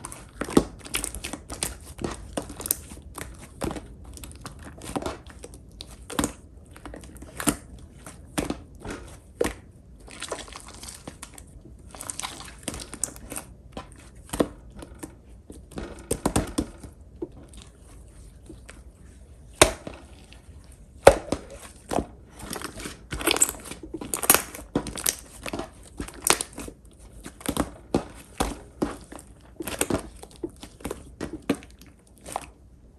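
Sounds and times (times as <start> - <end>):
slime squished by hand: 0.0 - 32.9.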